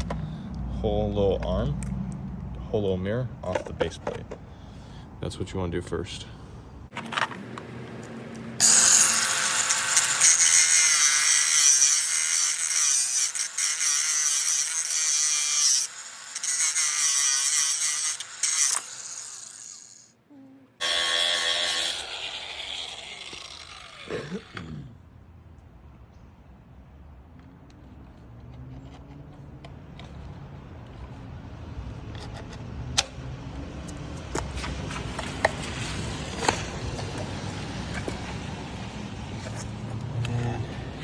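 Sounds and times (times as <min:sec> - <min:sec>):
high-pitched power tool cutting: 0:08.6 - 0:20.1, 0:20.8 - 0:24.6.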